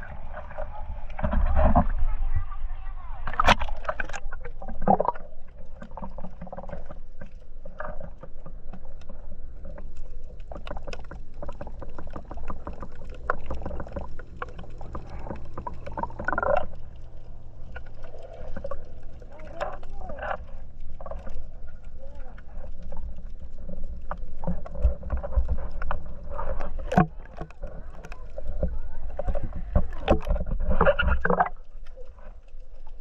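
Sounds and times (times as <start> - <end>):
low rumble: 0.0 - 7.6, 8.3 - 33.0
water sloshing and splashing: 0.0 - 33.0
small clicks and knocks: 22.2 - 32.6.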